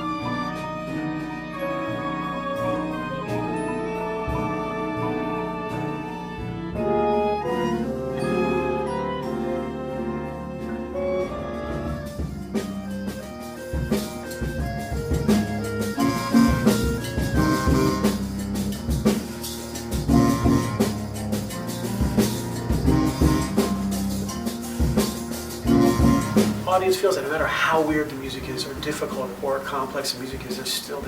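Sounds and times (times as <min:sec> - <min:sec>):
instrumental ensemble music: 0:00.0 - 0:31.0
drum strikes: 0:24.9 - 0:30.4.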